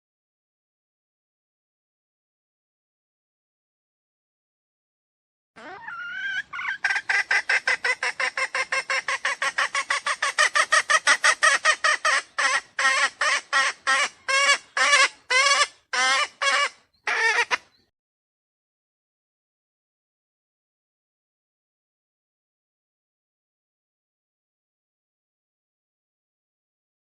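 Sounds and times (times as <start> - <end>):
clucking bird lure call: 5.6 - 17.9.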